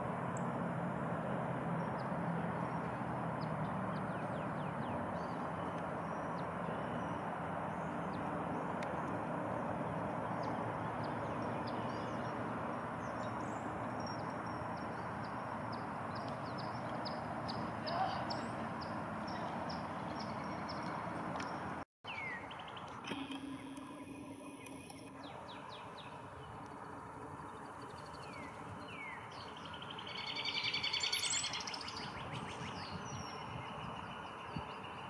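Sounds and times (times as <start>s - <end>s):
songbird call notes: 10.0s - 35.0s.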